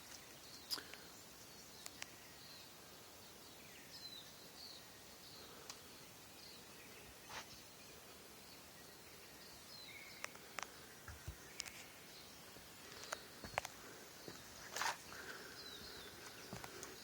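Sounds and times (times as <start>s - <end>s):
background hiss: 0.0s - 17.0s
birds chirping: 0.0s - 17.0s.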